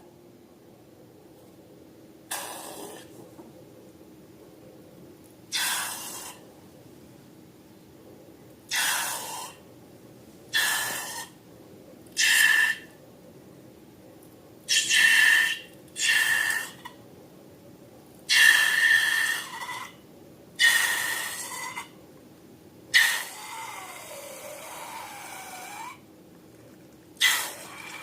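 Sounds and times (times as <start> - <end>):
air hissing out of balloon: 2.3 - 3.1.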